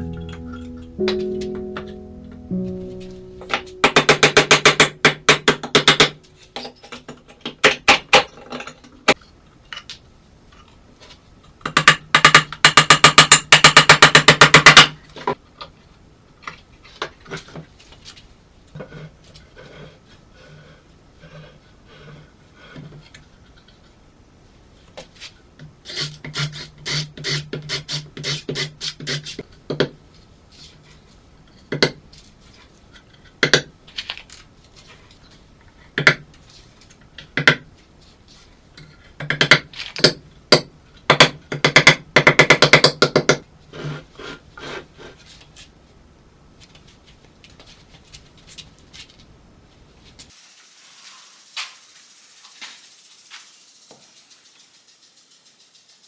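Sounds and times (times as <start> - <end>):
sharp knocks and clicks: 3.4 - 8.3.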